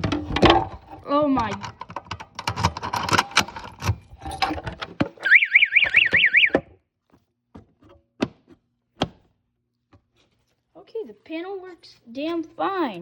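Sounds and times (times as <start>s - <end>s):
sharp clicks and knocks: 0.0s - 6.7s
fire alarm warbling tone: 5.2s - 6.7s.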